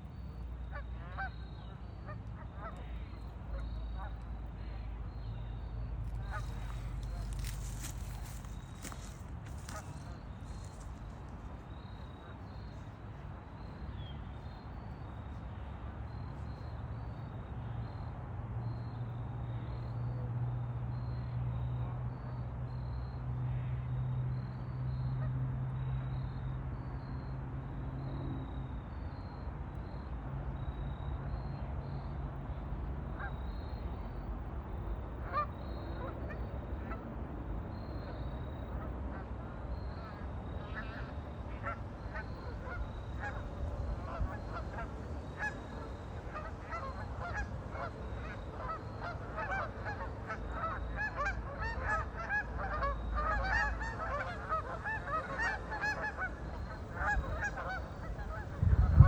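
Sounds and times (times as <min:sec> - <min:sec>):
ducks calling: 0:06.1 - 0:11.4, 0:37.9 - 0:59.0.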